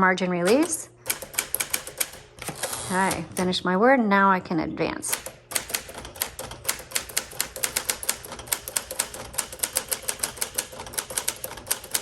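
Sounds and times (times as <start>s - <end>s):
typewriter key strikes: 0.4s - 2.8s, 5.1s - 12.0s.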